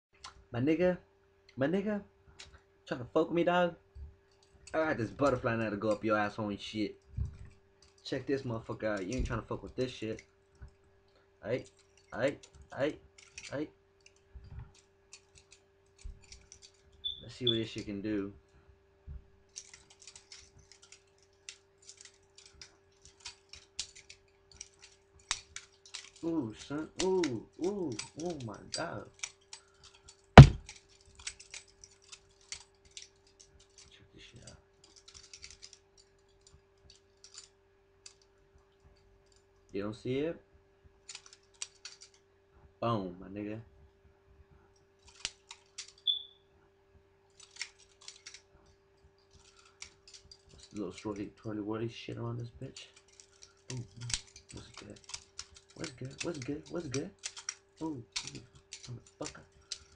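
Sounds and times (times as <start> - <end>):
faint steady hum: 0.2 - 59.9
butterfly knife handles clicking: 13.2 - 14.2, 14.8 - 17.2, 19.5 - 33.9, 34.8 - 38.3, 41.1 - 42.2, 45.0 - 46.3, 47.4 - 48.5, 49.3 - 51.3, 52.7 - 59.9.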